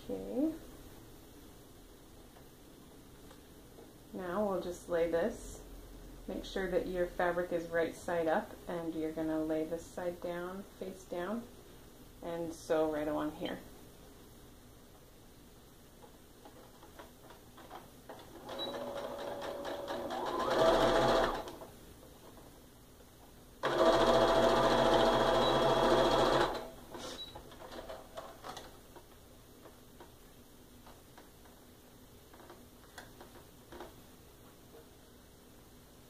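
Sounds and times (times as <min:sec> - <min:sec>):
sewing machine stitching: 0:18.2 - 0:21.6, 0:23.6 - 0:26.8.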